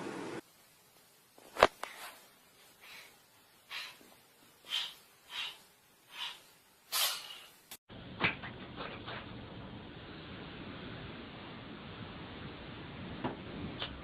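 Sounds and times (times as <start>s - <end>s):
cat sneezing: 6.9s - 7.4s.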